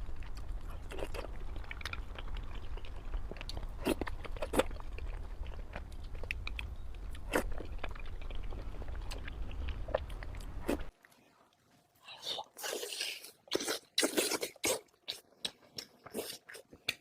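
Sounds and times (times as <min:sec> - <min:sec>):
steady low hum: 0:00.0 - 0:11.0
person chewing with mouth clicks: 0:00.2 - 0:11.2, 0:12.4 - 0:17.0.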